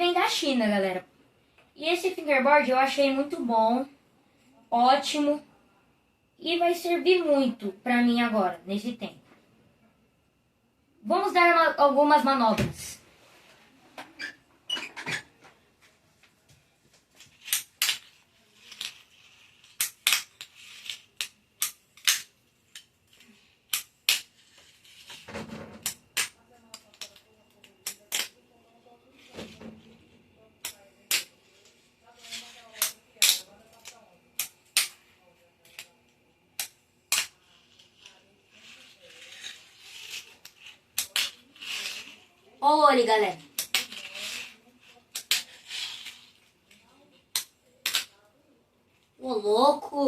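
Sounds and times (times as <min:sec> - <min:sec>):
fingerboard wheels rolling: 0:37.6 - 0:42.3.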